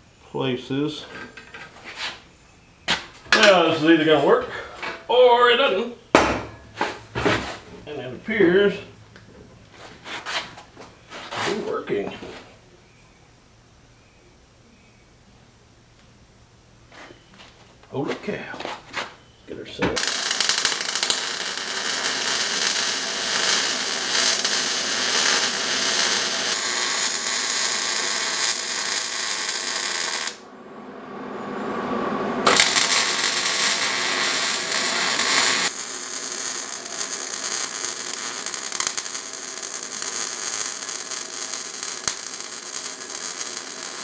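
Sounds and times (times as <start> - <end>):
arc welder hissing: 20.0 - 30.4, 32.4 - 44.0.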